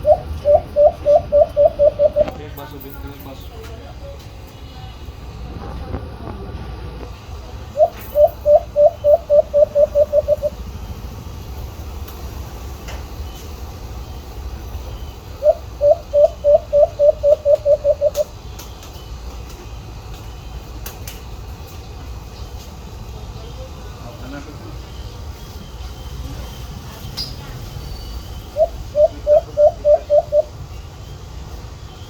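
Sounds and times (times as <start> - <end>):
dove cooing: 0.0 - 2.4, 7.7 - 10.6, 15.4 - 18.4, 28.5 - 30.6.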